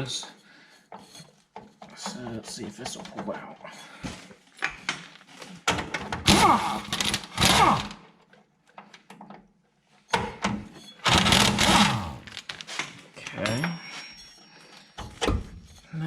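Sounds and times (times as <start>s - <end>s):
metal scraping with squeals: 10.7s - 11.1s, 13.4s - 15.0s.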